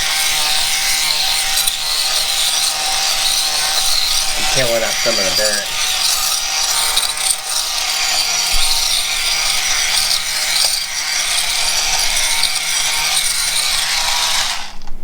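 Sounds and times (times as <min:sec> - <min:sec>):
shop vacuum running: 0:00.0 - 0:09.2
debris rattling through hose: 0:00.3 - 0:14.0.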